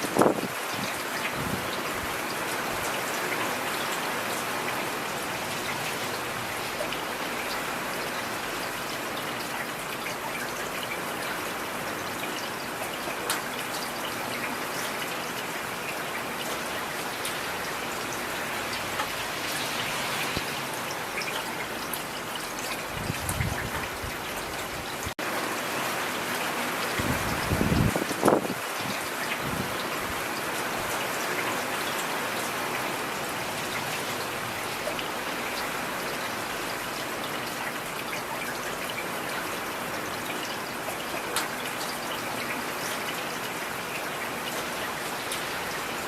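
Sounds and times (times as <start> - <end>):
heavy rain falling: 0.0 - 46.0.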